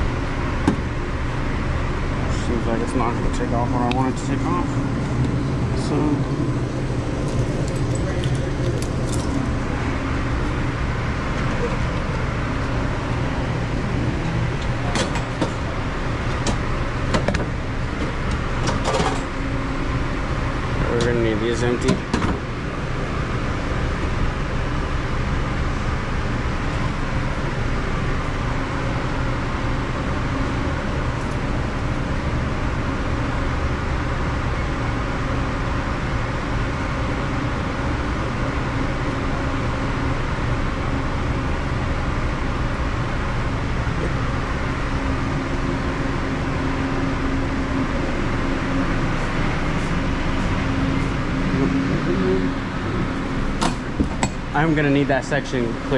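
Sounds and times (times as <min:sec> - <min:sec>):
kitchen equipment humming: 0:00.0 - 0:24.2.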